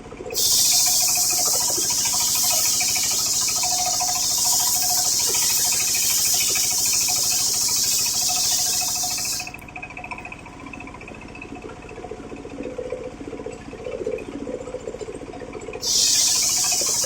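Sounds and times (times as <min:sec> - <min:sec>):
motor running: 0:00.3 - 0:12.3, 0:13.6 - 0:17.0
circular saw cutting wood: 0:00.4 - 0:09.6, 0:15.8 - 0:17.0.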